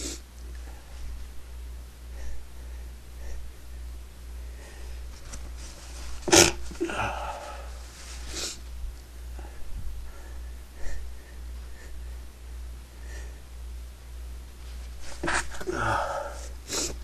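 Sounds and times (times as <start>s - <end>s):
person sneezing: 6.2s - 7.7s, 15.2s - 17.0s.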